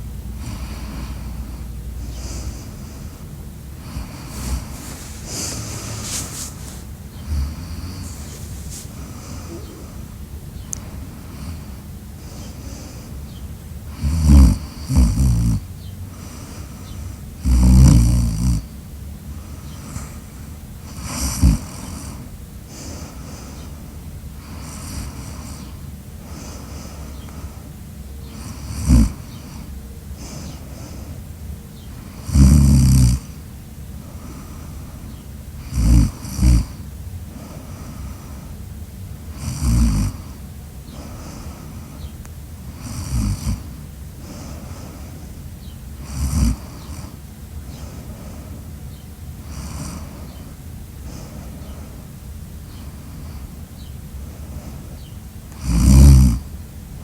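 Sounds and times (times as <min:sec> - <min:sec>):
loud snoring: 0:00.4 - 0:03.2, 0:03.8 - 0:10.1, 0:13.9 - 0:16.4, 0:17.4 - 0:18.7, 0:20.9 - 0:22.2, 0:24.4 - 0:26.4, 0:28.3 - 0:30.8, 0:32.0 - 0:33.4, 0:35.6 - 0:38.0, 0:39.3 - 0:40.4, 0:42.7 - 0:44.6, 0:46.0 - 0:47.2, 0:49.4 - 0:50.3, 0:55.5 - 0:56.5.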